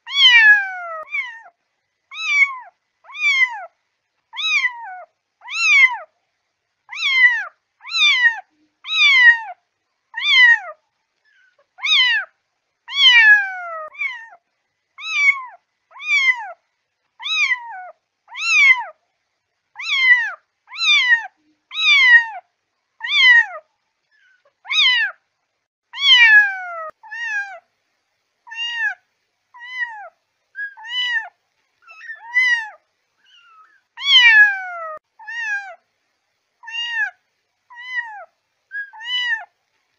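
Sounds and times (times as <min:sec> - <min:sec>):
kitten meowing: 0:00.1 - 0:01.5, 0:02.1 - 0:03.7, 0:04.3 - 0:06.1, 0:06.9 - 0:09.6, 0:10.2 - 0:10.8, 0:11.8 - 0:12.3, 0:12.9 - 0:14.4, 0:15.0 - 0:16.6, 0:17.2 - 0:19.0, 0:19.8 - 0:22.4, 0:23.0 - 0:23.6, 0:24.6 - 0:25.2, 0:26.0 - 0:27.6, 0:28.5 - 0:29.0, 0:29.6 - 0:35.8, 0:36.6 - 0:39.5.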